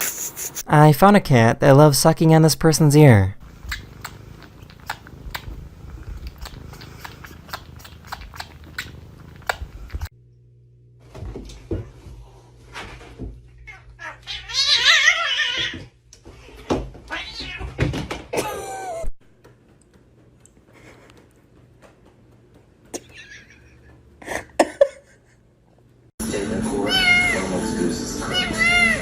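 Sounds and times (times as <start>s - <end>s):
cat meowing: 13.6s - 15.8s, 16.6s - 17.8s, 26.8s - 27.5s, 28.2s - 29.0s
knocks and thumps: 15.6s - 18.4s.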